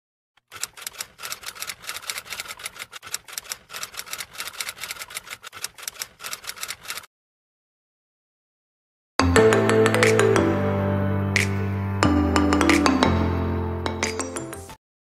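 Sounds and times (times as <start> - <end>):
typewriter keys clacking: 0.4 - 7.1.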